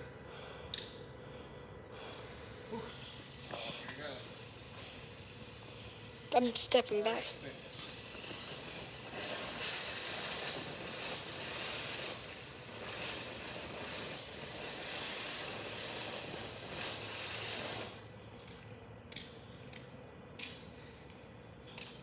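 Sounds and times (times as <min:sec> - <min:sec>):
firework fountain crackling hiss: 0:01.9 - 0:18.5.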